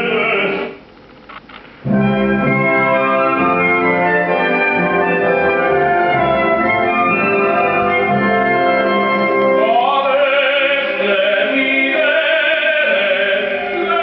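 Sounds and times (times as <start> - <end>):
operatic singer with vibrato: 0.0 - 0.8, 9.5 - 14.0
orchestral music over loudspeakers: 1.8 - 14.0.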